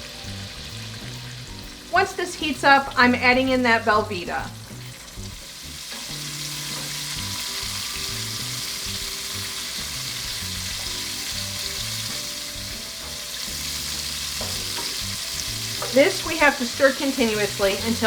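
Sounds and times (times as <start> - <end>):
liquid sizzling in a saucepan: 0.0 - 18.0
quiet background music: 0.0 - 18.0.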